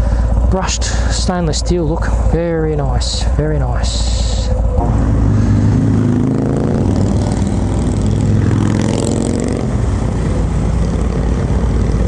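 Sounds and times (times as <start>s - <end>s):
motorcycle engine accelerating: 4.6s - 12.0s.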